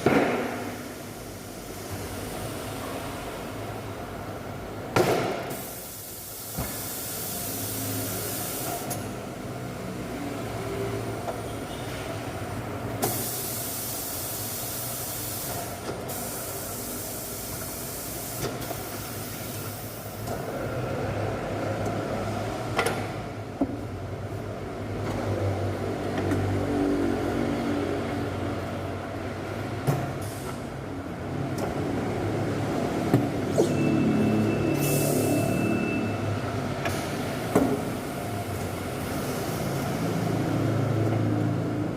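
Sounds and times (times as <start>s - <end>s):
compressed air hissing: 5.5s - 9.0s, 13.0s - 20.2s.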